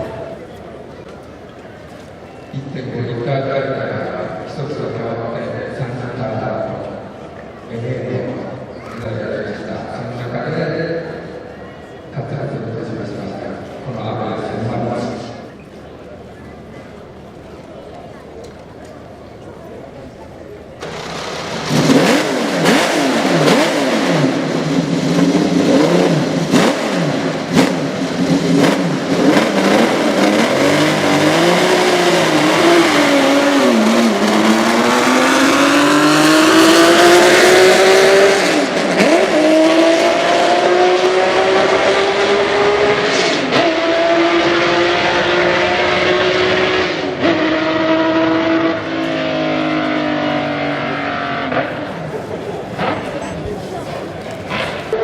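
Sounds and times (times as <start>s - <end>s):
racing engine revving: 20.8s - 55.0s.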